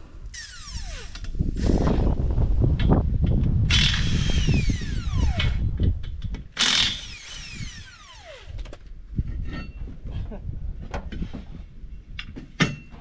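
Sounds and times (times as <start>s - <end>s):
impact wrench whirring: 0.3s - 2.0s, 3.7s - 5.8s, 6.6s - 8.8s.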